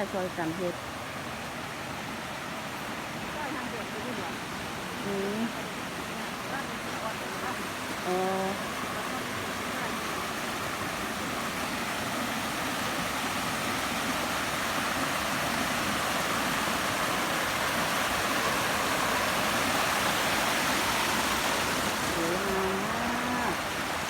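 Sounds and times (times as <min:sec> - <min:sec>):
waterfall pouring: 0:05.6 - 0:24.0
person speaking: 0:06.6 - 0:08.6, 0:22.1 - 0:23.7.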